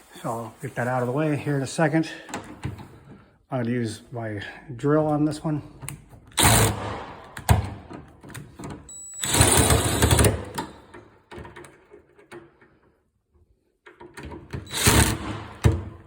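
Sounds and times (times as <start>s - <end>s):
power drill driving a screw: 6.4s - 7.0s, 8.9s - 10.6s, 14.6s - 15.8s.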